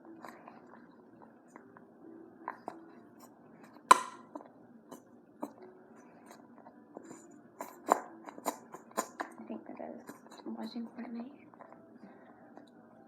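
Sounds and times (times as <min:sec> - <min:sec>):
spatula tapping against bowl: 0:03.8 - 0:05.6.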